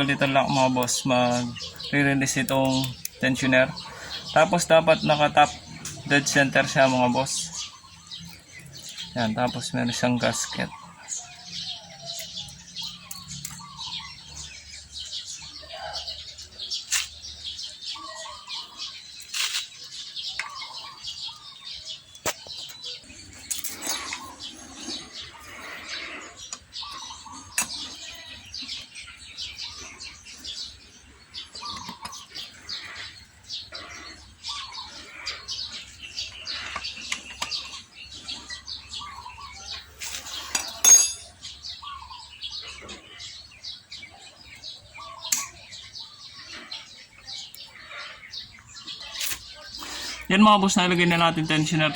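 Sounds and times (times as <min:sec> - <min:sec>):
birds chirping: 0:00.0 - 0:51.9
sharp metallic clink: 0:40.5 - 0:41.4.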